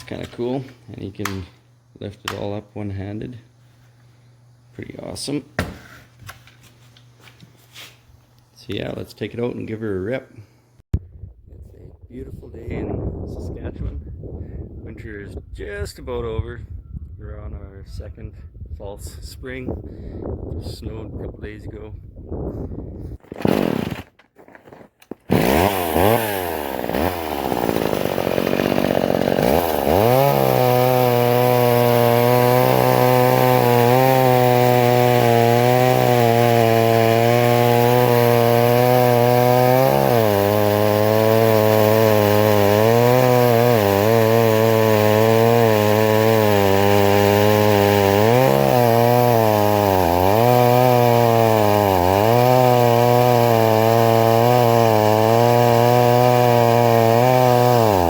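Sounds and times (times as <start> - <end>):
chainsaw running: 0.0 - 3.4, 23.3 - 58.0.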